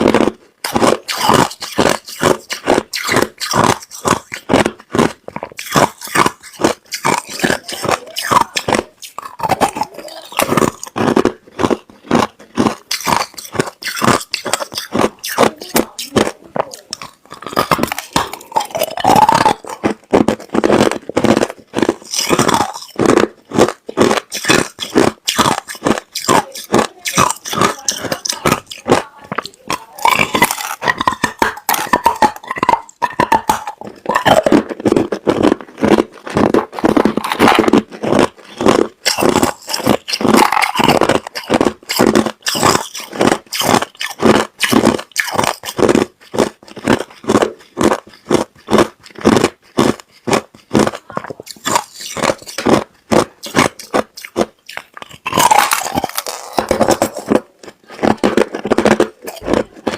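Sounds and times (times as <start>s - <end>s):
ice being chewed: 0.0s - 59.9s.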